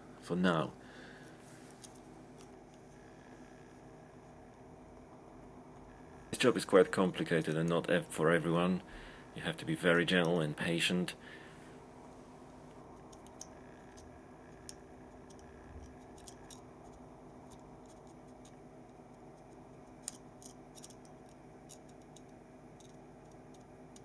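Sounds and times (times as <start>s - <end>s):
steady low hum: 0.0s - 24.0s
small plastic clicks and ticks: 13.0s - 24.0s.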